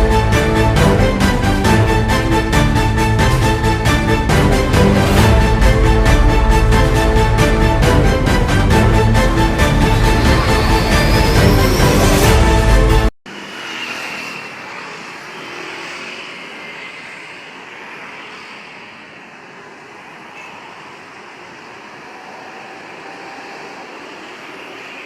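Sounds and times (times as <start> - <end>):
background music: 0.0 - 13.1
vehicle passing: 0.0 - 25.0.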